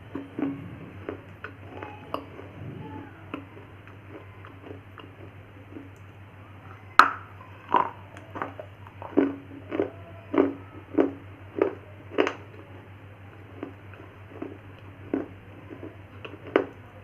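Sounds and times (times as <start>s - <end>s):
chewing crunches: 3.3s - 6.1s, 7.0s - 17.0s.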